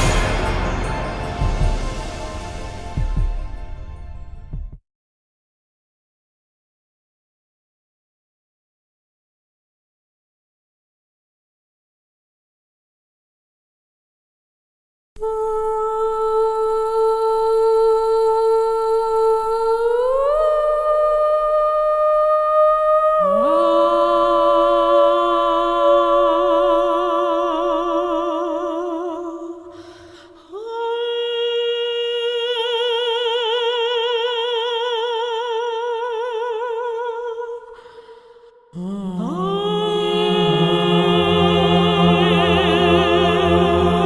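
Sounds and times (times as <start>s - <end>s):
lower humming voice: 38.8s - 44.0s.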